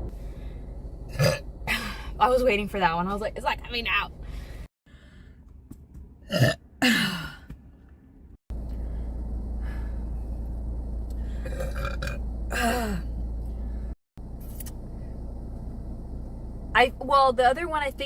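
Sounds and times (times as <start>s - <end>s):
steady low hum: 0.0s - 18.0s
woman burping loudly: 1.1s - 1.4s, 6.3s - 7.4s, 11.4s - 13.0s.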